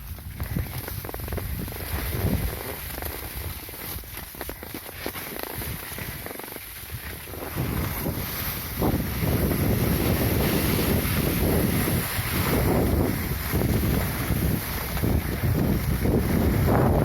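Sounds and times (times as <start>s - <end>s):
wind buffeting microphone: 0.0s - 4.8s, 5.4s - 17.0s.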